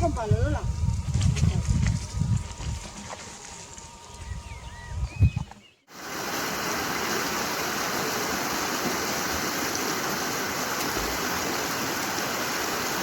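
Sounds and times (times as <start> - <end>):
stream water rushing: 5.9 - 13.0.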